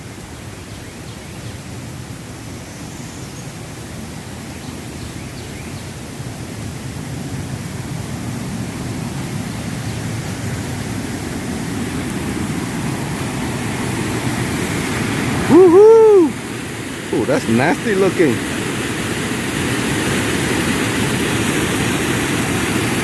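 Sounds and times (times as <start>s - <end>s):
small waterfall rushing: 0.0s - 23.0s.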